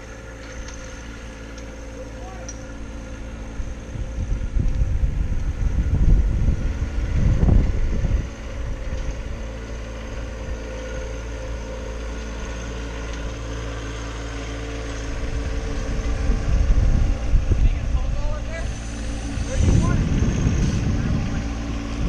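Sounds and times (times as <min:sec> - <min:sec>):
engine idling: 0:00.0 - 0:22.0
gusty low rumble: 0:03.4 - 0:10.6, 0:15.1 - 0:22.0.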